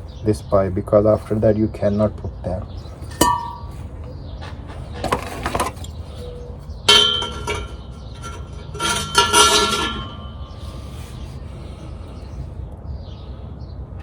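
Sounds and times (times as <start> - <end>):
ringing metallic clinks: 3.1 - 3.8, 6.9 - 10.5
metal clamp scraping: 4.8 - 11.0.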